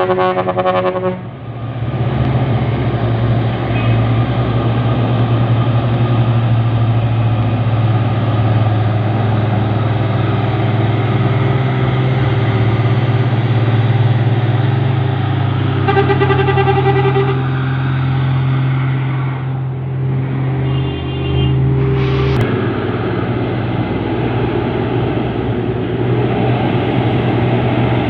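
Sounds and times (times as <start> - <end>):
horn-like tone: 0.0 - 1.3, 15.8 - 17.5, 20.6 - 22.4
road noise: 0.0 - 28.0
vehicle engines labouring uphill: 0.0 - 28.0.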